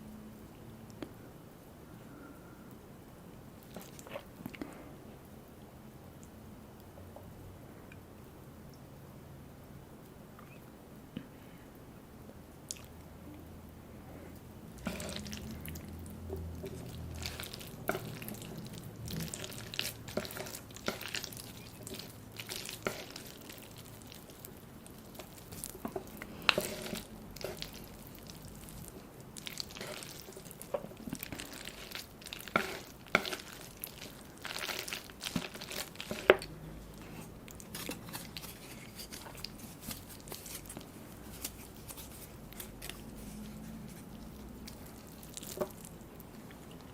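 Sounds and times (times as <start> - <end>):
chewing and wet mouth sounds: 3.6 - 4.8, 12.6 - 46.9.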